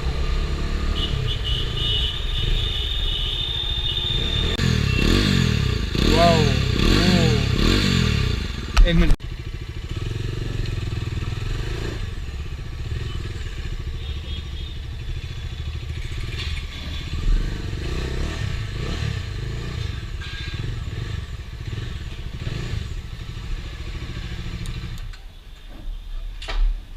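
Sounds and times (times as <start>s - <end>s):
motorcycle engine running: 4.2s - 19.7s.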